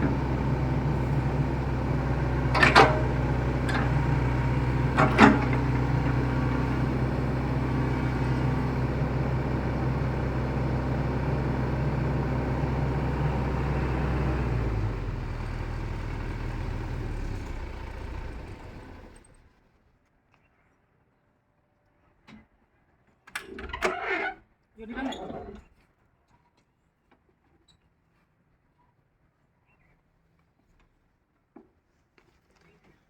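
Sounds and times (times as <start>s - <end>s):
excavator diesel engine running: 0.0s - 19.5s
metal clank: 2.5s - 4.0s, 4.9s - 6.2s.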